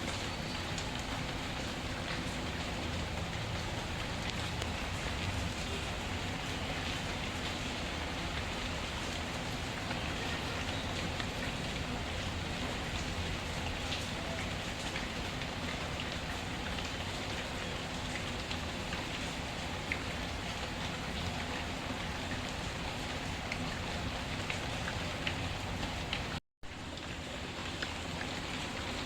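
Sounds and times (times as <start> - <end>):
crackling wood fire: 0.0 - 29.0
steady rain falling: 0.0 - 29.0.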